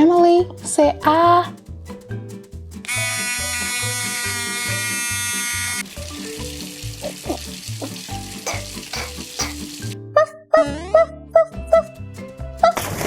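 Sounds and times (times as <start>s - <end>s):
electric toothbrush buzzing: 2.9s - 10.0s
brushing noise: 8.4s - 9.7s
music with steady beat: 8.4s - 10.0s.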